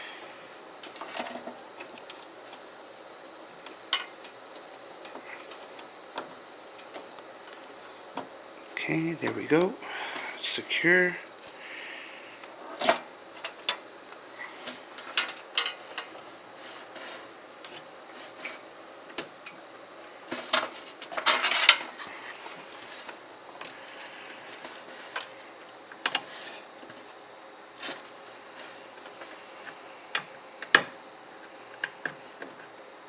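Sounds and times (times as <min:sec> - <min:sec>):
scraping rustle: 0:12.6 - 0:19.2, 0:20.1 - 0:25.5, 0:26.1 - 0:27.2, 0:27.8 - 0:29.9.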